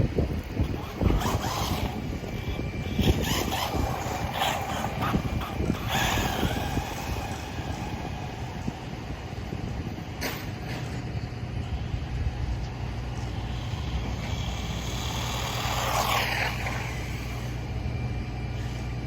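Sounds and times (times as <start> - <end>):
steady low rumble: 0.0 - 19.0
vehicle passing by: 12.4 - 17.7.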